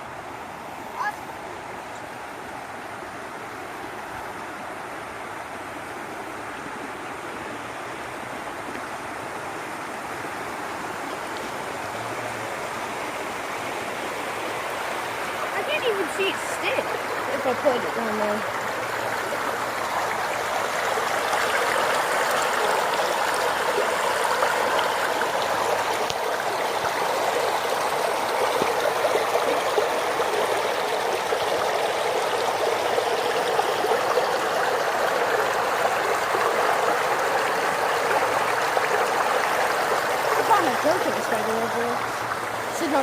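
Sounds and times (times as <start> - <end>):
floodwater rushing: 0.0 - 43.0.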